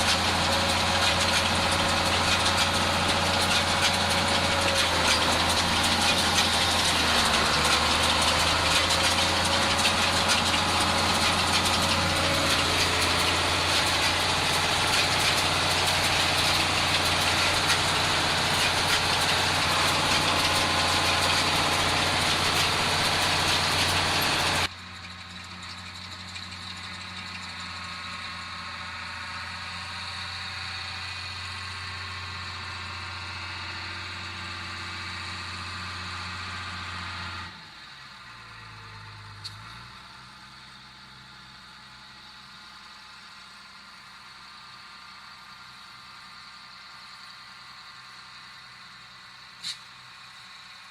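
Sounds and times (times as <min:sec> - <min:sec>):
tractor diesel engine running: 0:00.0 - 0:50.9.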